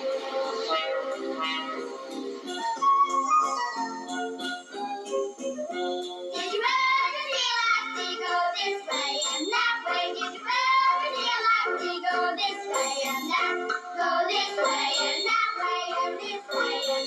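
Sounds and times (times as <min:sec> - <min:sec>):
light instrumental backing: 0:00.0 - 0:17.0
children singing: 0:06.4 - 0:17.0.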